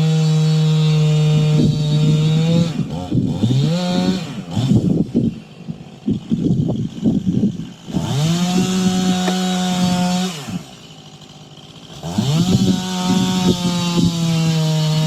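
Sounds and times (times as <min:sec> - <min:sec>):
chainsaw idling and revving: 0:00.0 - 0:15.0.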